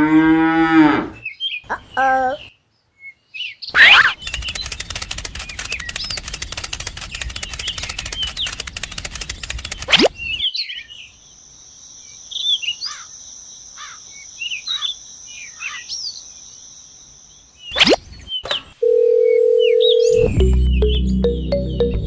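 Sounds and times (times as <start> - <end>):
birds chirping: 1.2 - 22.0
electronic beep tone: 19.6 - 22.0
high-pitched drone: 20.0 - 22.0
rising whoosh: 20.1 - 22.0.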